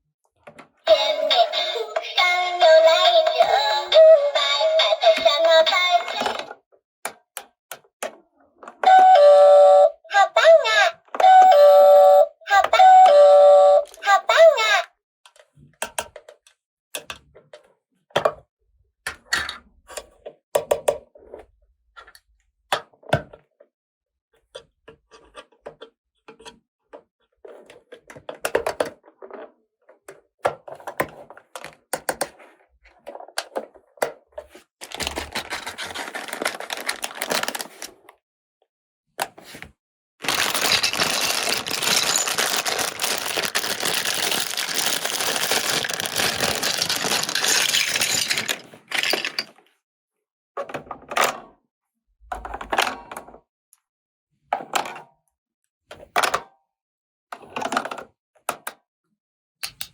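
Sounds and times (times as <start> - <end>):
plastic toy pieces clicking: 34.8 - 38.0, 40.2 - 49.6
rustling noise: 40.2 - 49.2.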